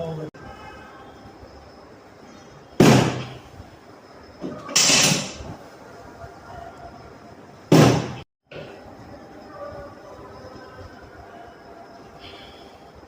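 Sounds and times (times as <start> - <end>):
loud thuds: 7.7 - 8.2.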